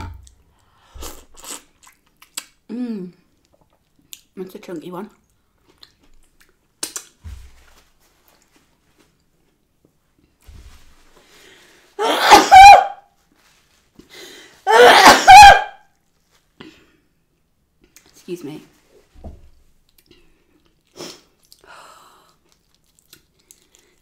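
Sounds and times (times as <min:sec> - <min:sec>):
person sneezing: 0:12.0 - 0:13.0, 0:14.6 - 0:15.7.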